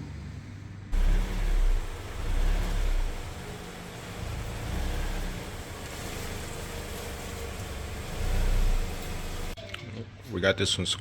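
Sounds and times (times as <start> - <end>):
car engine rumbling: 0.8 - 9.6.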